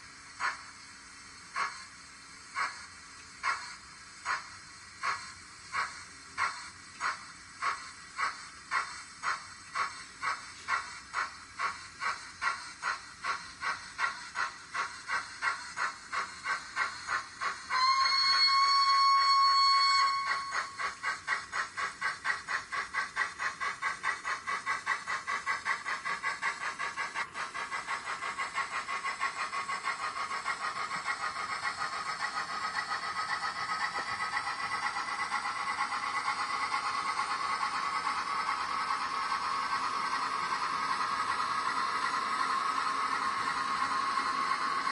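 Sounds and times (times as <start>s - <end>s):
steam locomotive exhaust chuffs: 0.0s - 44.9s
steam whistle: 17.8s - 20.8s.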